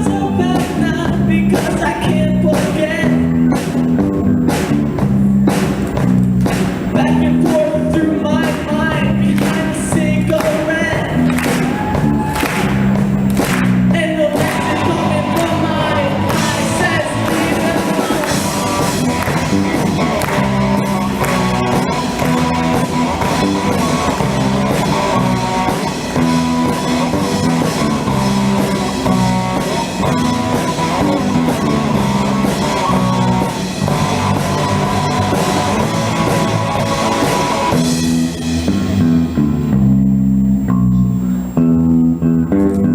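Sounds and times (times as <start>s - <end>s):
person singing: 0.0s - 3.4s, 7.0s - 11.3s, 13.9s - 28.1s, 28.8s - 37.7s
bass guitar: 0.0s - 42.9s
drums: 0.0s - 42.9s
electric guitar: 0.0s - 42.9s.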